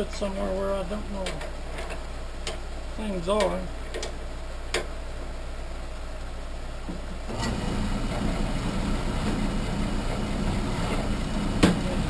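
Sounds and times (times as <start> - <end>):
lathe motor humming: 7.3 - 12.0.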